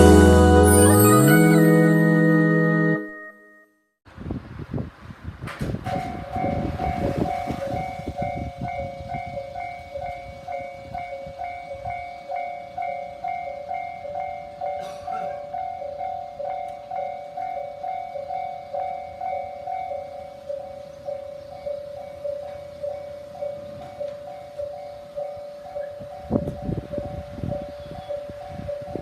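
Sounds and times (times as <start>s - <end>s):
level-crossing warning bell: 0.0s - 3.6s, 6.0s - 29.0s
train rumbling past: 5.5s - 14.6s.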